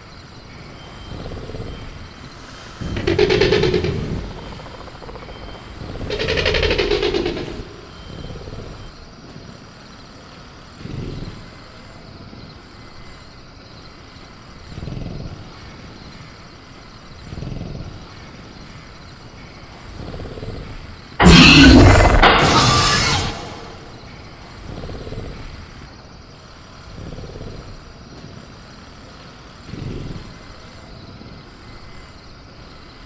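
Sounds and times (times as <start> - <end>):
crickets chirping: 0.0 - 33.0
creature growling call: 2.7 - 8.4, 21.2 - 24.1
loud sudden burst: 21.2 - 24.0.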